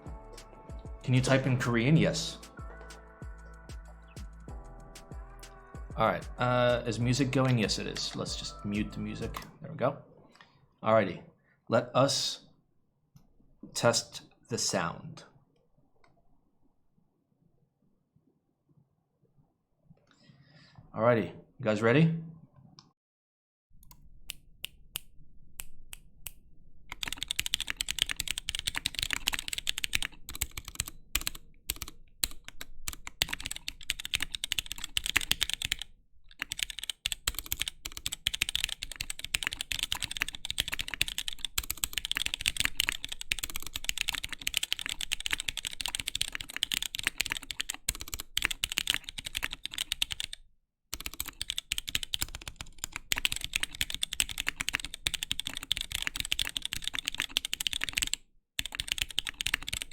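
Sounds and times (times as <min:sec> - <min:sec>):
fast typing on mechanical keyboard: 0:26.9 - 0:50.4, 0:51.0 - 0:59.9.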